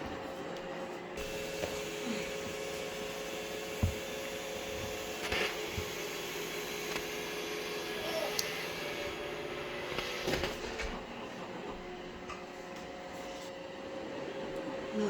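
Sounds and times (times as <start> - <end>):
robot vacuum whirring hum: 0.0 - 15.0
dull thump: 3.8 - 4.2.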